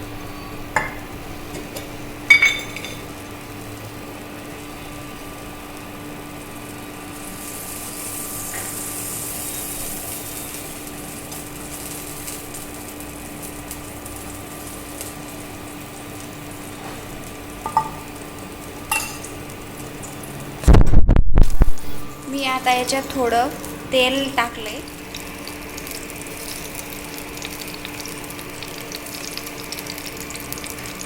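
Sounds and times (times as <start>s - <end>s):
stovetop low hum: 0.0s - 31.0s
cooking utensils clinking: 0.8s - 3.1s, 17.6s - 18.1s, 18.9s - 19.4s.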